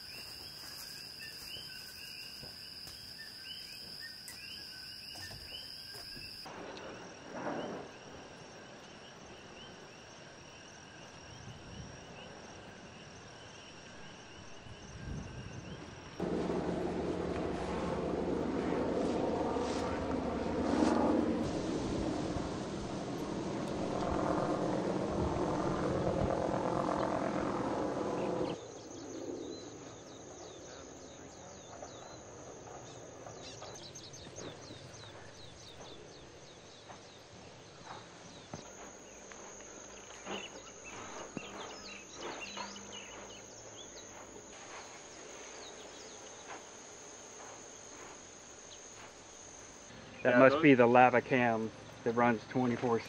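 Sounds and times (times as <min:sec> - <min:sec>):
crickets trilling: 0:00.0 - 0:53.0
loud roar with low rumble: 0:16.2 - 0:29.1.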